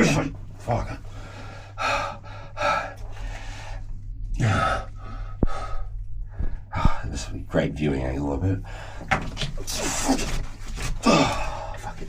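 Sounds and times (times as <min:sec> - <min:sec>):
low machinery hum: 0:00.0 - 0:12.0
man breathing hard: 0:01.0 - 0:07.2, 0:08.6 - 0:10.1.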